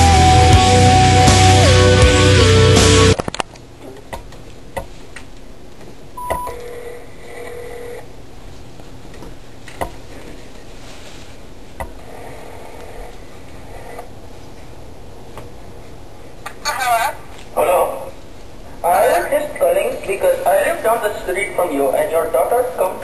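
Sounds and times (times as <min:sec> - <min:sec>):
short beep: 0:06.2 - 0:06.6
telephone ringing tone: 0:06.2 - 0:08.1.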